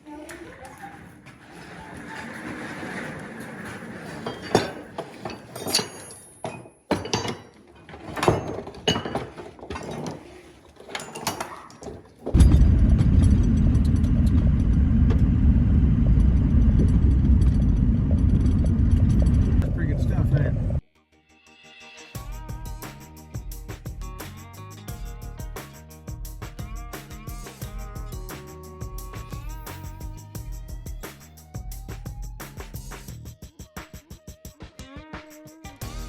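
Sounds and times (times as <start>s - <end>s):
metal tools clinking: 1.9s - 12.6s
loud low rumble: 12.4s - 20.8s.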